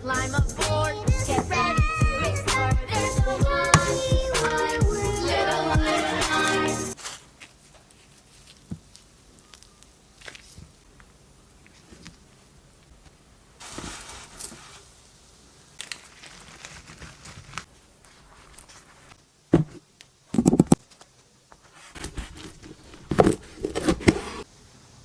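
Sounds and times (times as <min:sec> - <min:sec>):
food packaging tearing and crinkling: 0:07.0 - 0:11.1, 0:15.8 - 0:19.2, 0:21.7 - 0:24.4.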